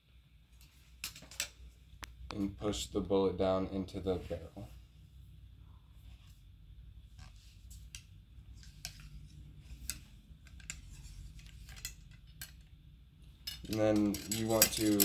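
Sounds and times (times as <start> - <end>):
metal rod clicking in barrel: 13.5 - 15.0.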